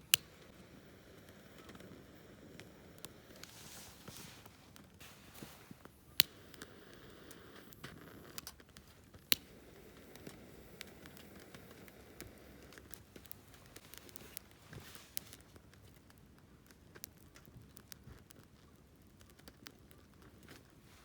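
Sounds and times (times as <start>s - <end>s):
firewood crackling: 0.0s - 21.0s
loud sharp pops of fire: 5.0s - 14.1s.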